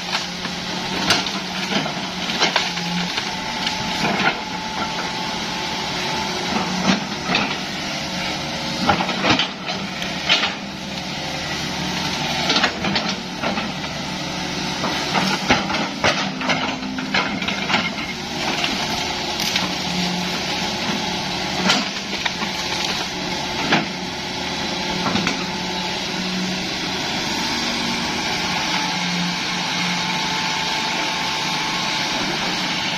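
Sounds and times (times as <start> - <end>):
bamboo cracking and snapping: 0.0 - 5.0, 14.9 - 24.0
excavator diesel engine running: 0.0 - 32.9.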